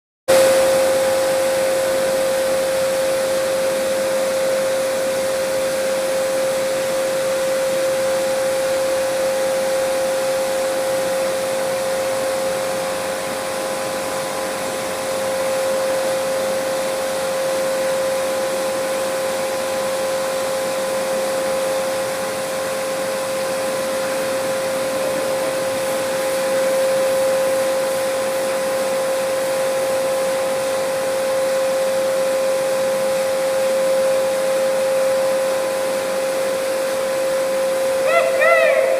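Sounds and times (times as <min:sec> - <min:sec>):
pressure washer whine: 0:00.3 - 0:38.9
water jet hissing: 0:22.2 - 0:30.1.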